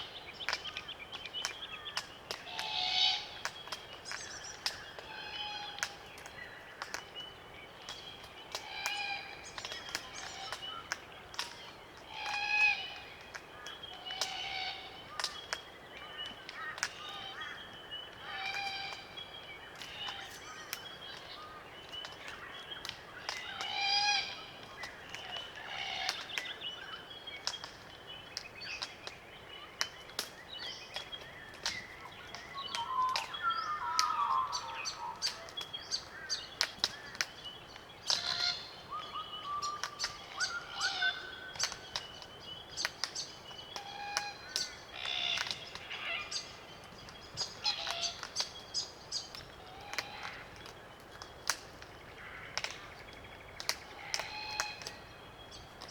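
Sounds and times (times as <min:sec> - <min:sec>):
beaks clicking on cones: 0:41.5 - 0:55.9.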